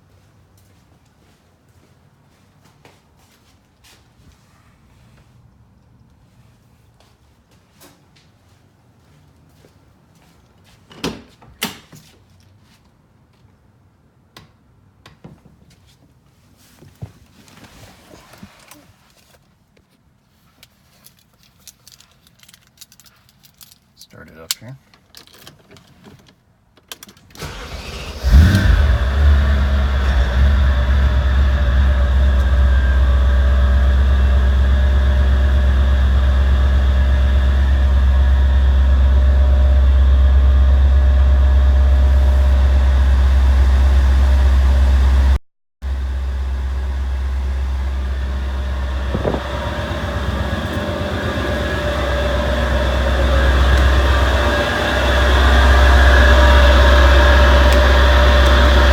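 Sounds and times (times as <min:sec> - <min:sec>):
engine cranking: 0:27.4 - 0:33.2, 0:48.6 - 0:58.9
car engine idling: 0:27.4 - 0:58.9.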